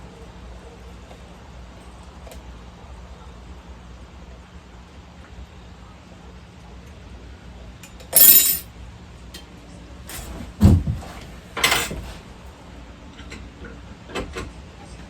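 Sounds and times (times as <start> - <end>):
metal parts clinking: 8.2 - 8.6.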